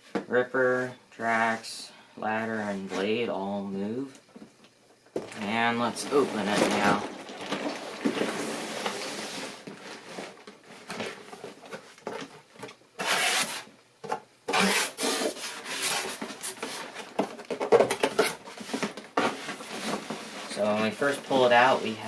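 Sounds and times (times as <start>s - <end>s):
sharp cardboard crackles: 5.2s - 12.3s
cardboard rubbing and scraping: 5.5s - 10.4s, 13.0s - 13.7s, 14.5s - 17.0s.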